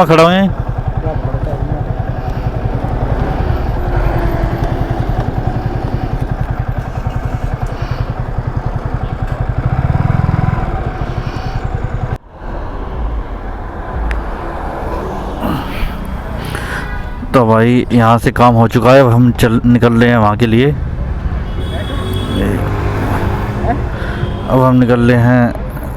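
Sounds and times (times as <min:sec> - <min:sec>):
motorcycle engine running: 0:00.0 - 0:12.2, 0:20.8 - 0:24.7.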